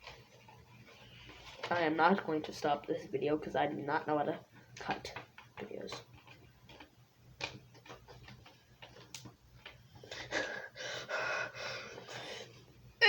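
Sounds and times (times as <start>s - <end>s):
paper rustling and crinkling: 0.0s - 2.3s, 4.9s - 9.8s.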